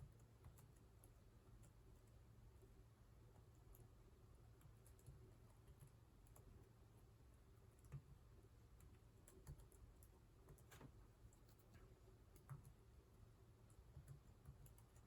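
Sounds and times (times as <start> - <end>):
low room hum: 0.0 - 15.0
computer keyboard typing: 4.6 - 6.6, 8.8 - 12.8, 13.8 - 15.0.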